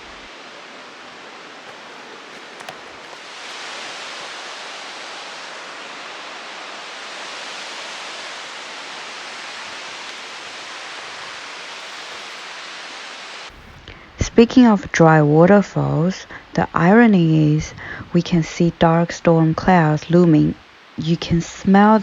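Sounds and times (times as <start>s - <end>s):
faint clicks: 1.5s - 3.6s, 10.0s - 12.6s.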